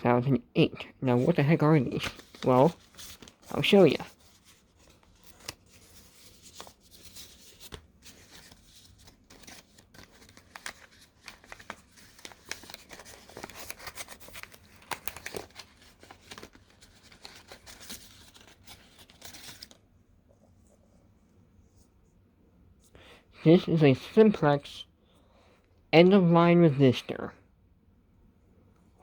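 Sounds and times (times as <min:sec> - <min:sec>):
crinkly packaging torn open: 0:02.0 - 0:19.8.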